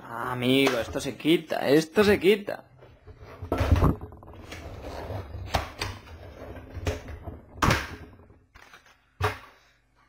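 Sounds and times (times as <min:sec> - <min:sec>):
rustling cardboard and plastic packaging: 0:08.3 - 0:09.7.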